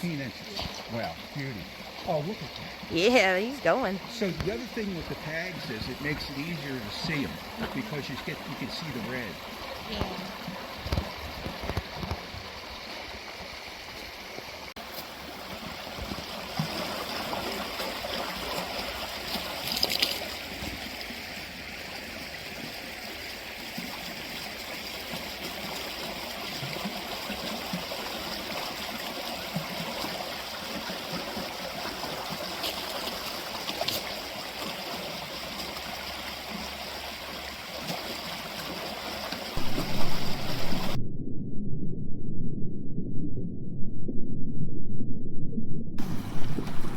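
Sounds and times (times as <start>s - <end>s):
creek water running over stones: 0.0s - 41.0s
low rumble: 39.6s - 46.9s.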